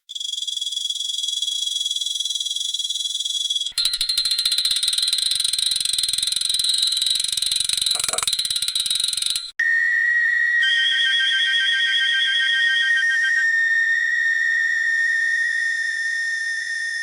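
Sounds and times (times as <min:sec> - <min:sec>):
buzzing pulsed alarm tone: 0:03.8 - 0:09.5
electronic alarm tone: 0:04.2 - 0:09.5.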